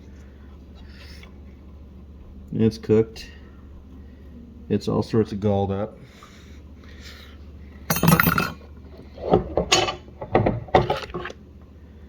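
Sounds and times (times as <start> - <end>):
metal parts clinking: 7.9 - 8.6
metal rattle: 7.9 - 8.6.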